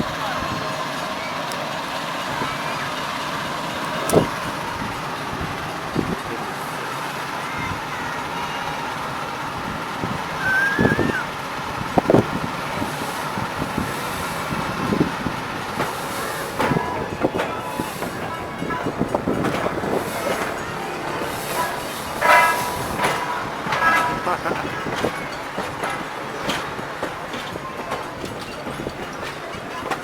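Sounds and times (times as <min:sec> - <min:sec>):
train rumbling: 0:00.0 - 0:30.0
short clanks: 0:12.0 - 0:30.0.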